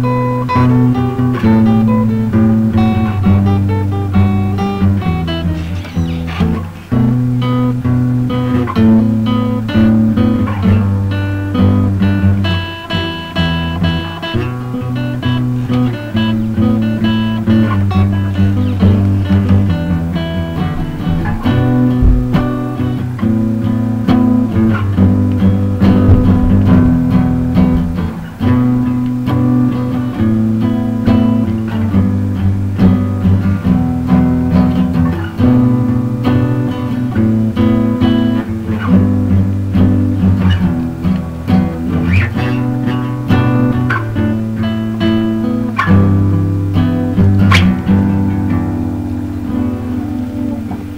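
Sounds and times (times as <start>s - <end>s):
guitars playing chords: 0.0s - 50.9s
bass line: 17.6s - 23.6s, 24.3s - 29.3s.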